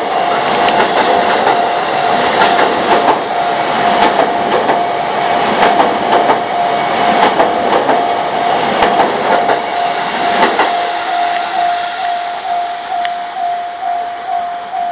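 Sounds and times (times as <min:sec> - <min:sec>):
crossing warning bell ringing: 0:00.0 - 0:04.0, 0:06.3 - 0:14.9
train wheels clicking over rail joints: 0:00.3 - 0:11.6.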